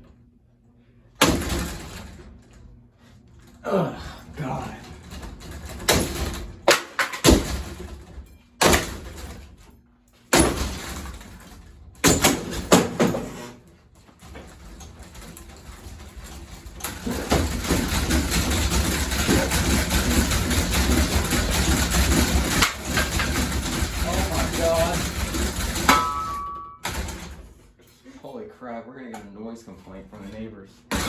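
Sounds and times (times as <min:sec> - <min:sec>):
loud clattering: 0:14.2 - 0:27.4
heavy knocks with ringing: 0:25.0 - 0:27.2.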